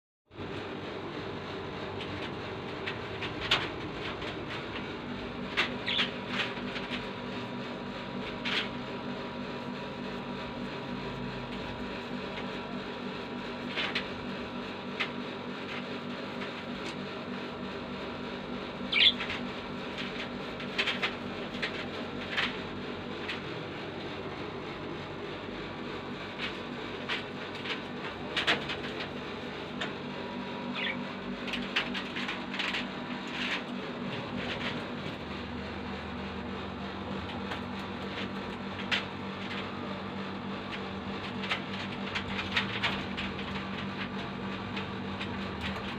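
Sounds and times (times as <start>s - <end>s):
steady hum: 0.3s - 45.9s
caged bird chirping: 3.4s - 7.1s, 18.7s - 22.4s, 30.2s - 33.5s.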